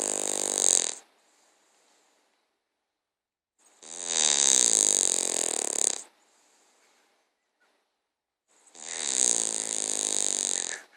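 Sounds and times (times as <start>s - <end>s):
dog snoring: 0.0s - 2.3s, 3.6s - 6.7s, 8.5s - 10.9s.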